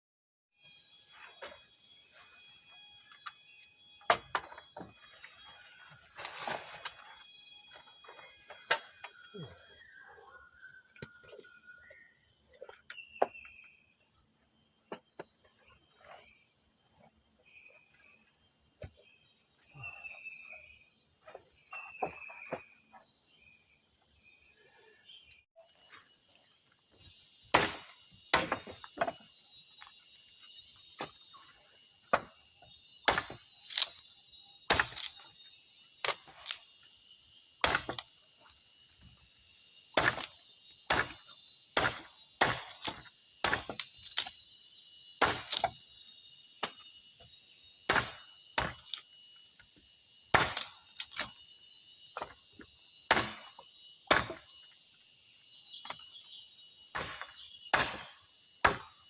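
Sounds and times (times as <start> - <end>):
forest insects droning: 0.6 - 59.0
tool striking wood: 4.0 - 5.1, 27.4 - 29.3, 32.1 - 32.4, 33.0 - 34.0, 34.6 - 35.2, 37.6 - 38.2, 39.9 - 44.3, 45.2 - 45.8, 47.8 - 49.0, 50.3 - 51.4, 53.1 - 54.5, 56.9 - 59.0.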